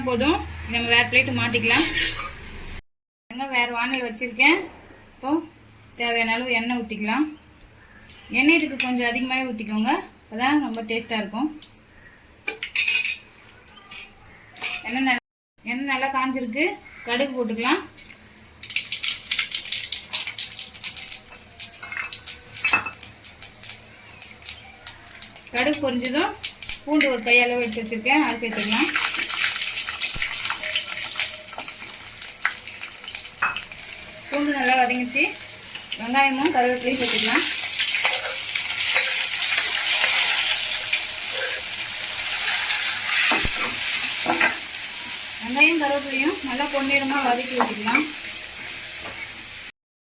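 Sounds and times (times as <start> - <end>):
seeds spluttering in hot oil: 18.0 - 49.7.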